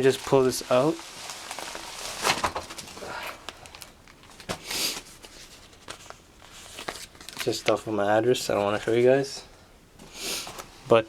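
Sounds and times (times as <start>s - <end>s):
cardboard rustling: 0.0s - 7.8s.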